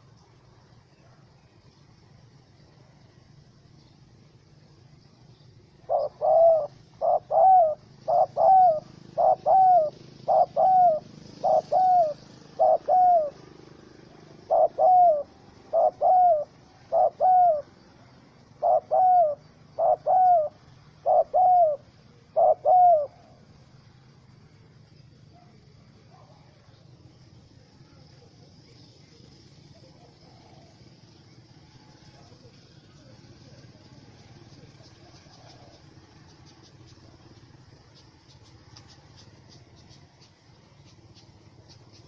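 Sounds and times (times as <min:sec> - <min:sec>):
dove cooing: 0:05.6 - 0:23.7, 0:28.2 - 0:42.0.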